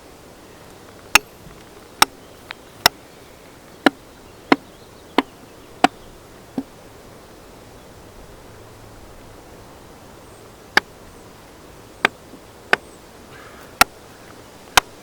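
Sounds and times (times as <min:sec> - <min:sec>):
tool striking wood: 0:01.1 - 0:01.4.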